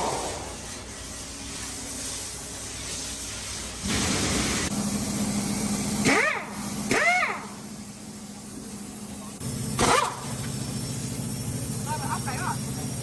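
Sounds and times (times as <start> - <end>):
loud hiss: 0.0 - 13.0.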